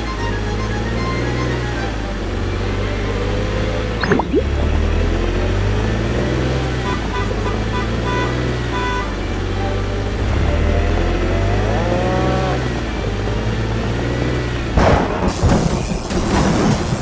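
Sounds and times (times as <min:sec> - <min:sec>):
cartoon engine running: 0:04.0 - 0:05.1
crash: 0:14.8 - 0:17.0.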